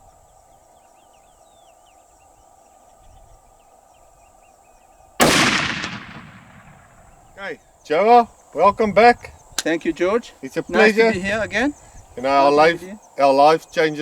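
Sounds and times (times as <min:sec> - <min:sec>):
birds chirping: 0:00.0 - 0:14.0
insects chirping: 0:00.0 - 0:14.0
rifle shot: 0:05.2 - 0:07.3.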